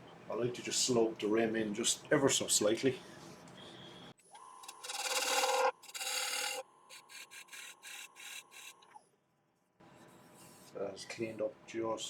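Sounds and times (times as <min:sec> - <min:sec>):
lathe whine: 0:04.6 - 0:08.7
lathe tool scraping wood: 0:04.6 - 0:08.8.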